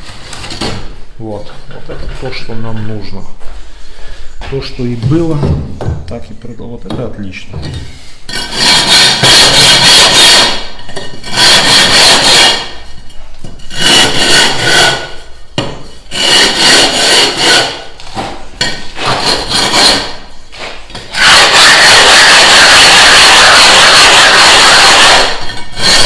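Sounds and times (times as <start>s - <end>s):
stone tile being rasped by hand: 8.3s - 12.8s, 13.6s - 15.3s, 16.0s - 18.0s, 18.6s - 20.3s, 20.9s - 26.0s.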